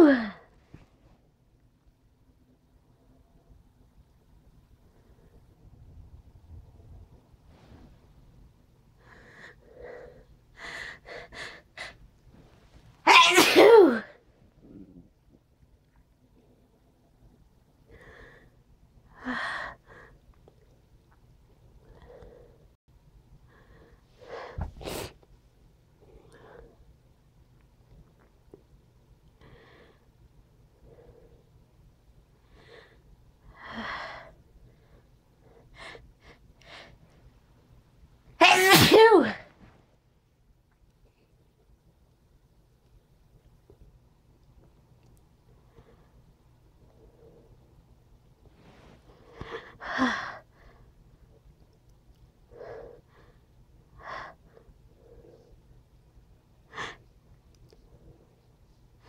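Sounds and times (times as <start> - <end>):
person sneezing loudly: 13.1 - 14.1, 38.4 - 39.4.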